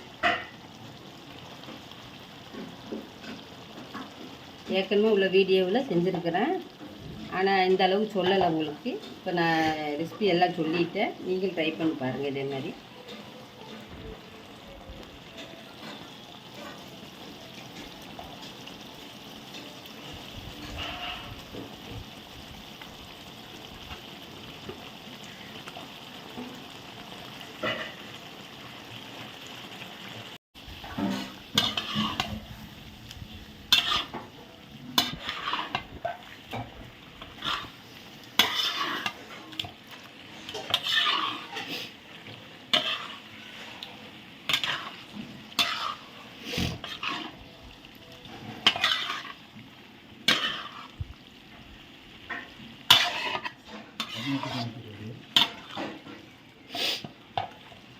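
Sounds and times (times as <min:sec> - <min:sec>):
vegetables sizzling in a pot: 0:00.0 - 0:57.9
metal ladle scraping a pot: 0:15.3 - 0:18.6, 0:20.5 - 0:21.7, 0:27.6 - 0:28.1, 0:30.8 - 0:32.5, 0:33.6 - 0:37.8, 0:38.4 - 0:47.5, 0:48.3 - 0:49.5, 0:50.2 - 0:51.0, 0:52.3 - 0:57.1.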